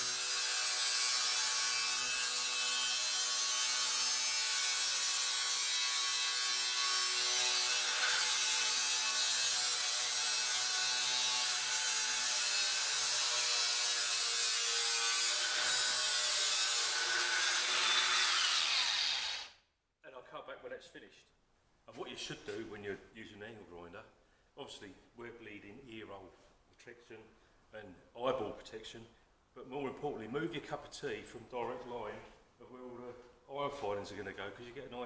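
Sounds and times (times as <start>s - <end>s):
angle grinder cutting sheet steel: 0.0s - 19.6s
grinder motor whine: 17.5s - 19.5s.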